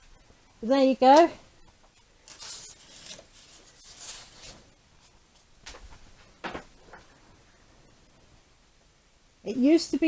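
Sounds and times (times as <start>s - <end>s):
soft handling rustling: 1.6s - 7.3s.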